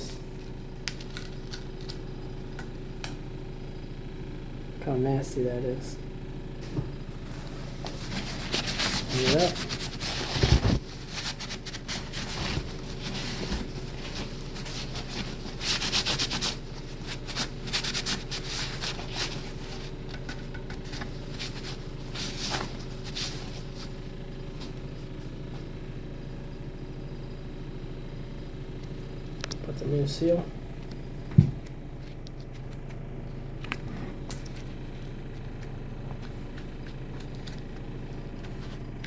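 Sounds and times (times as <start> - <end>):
steady low hum: 0.0 - 39.0
scrubbing and rubbing strokes: 7.2 - 20.1.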